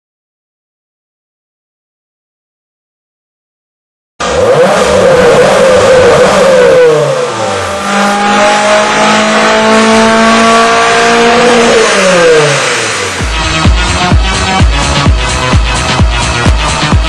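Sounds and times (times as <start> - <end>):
car engine revving: 4.2 - 17.0.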